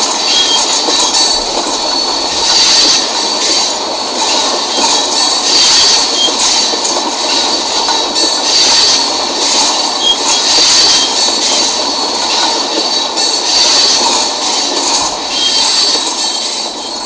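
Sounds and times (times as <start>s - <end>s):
freight train wheels rumbling: 0.0s - 17.0s
high wheel squeal: 0.0s - 17.0s.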